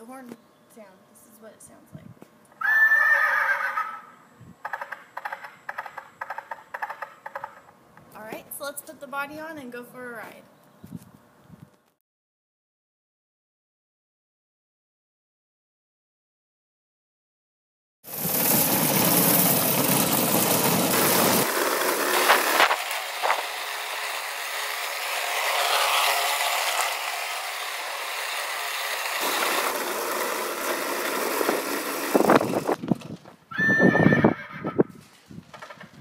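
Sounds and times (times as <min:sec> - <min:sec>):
go-kart driving: 0:18.1 - 0:33.1
novelty horn whinnying: 0:33.5 - 0:34.9.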